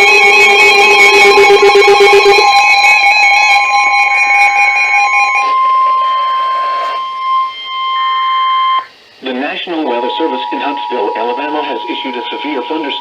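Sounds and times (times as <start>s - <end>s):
multi-pitched alarm tone: 0.0s - 13.0s
steady warning alarm tone: 0.0s - 13.0s.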